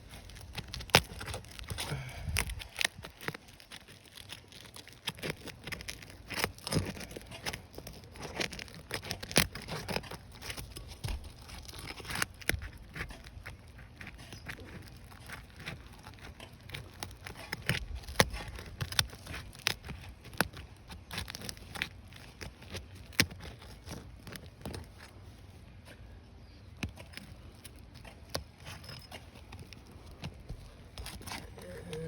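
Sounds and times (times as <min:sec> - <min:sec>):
roof shingles cracking and snapping: 0:00.0 - 0:25.1.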